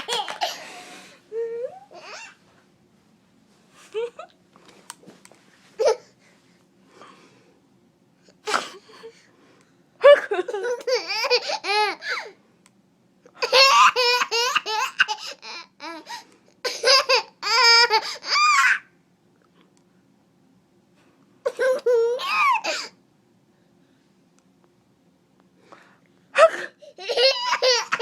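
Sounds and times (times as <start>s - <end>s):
baby laughing: 0.0s - 0.6s, 10.4s - 12.3s, 13.4s - 16.0s, 16.7s - 18.8s, 26.9s - 28.0s
person sneezing: 8.4s - 9.0s.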